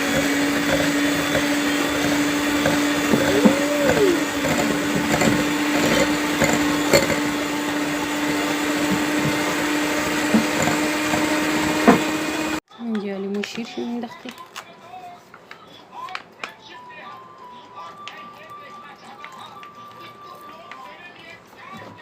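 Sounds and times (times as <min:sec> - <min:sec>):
beaters clicking against bowl: 0:00.0 - 0:12.0
electric mixer motor hum: 0:00.0 - 0:12.6.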